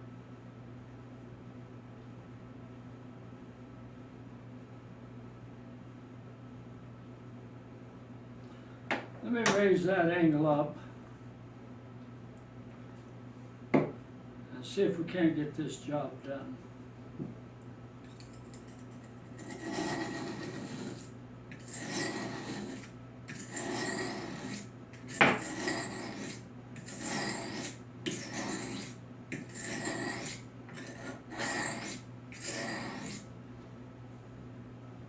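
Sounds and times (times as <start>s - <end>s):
knife scraping on sharpening stone: 18.1s - 33.3s.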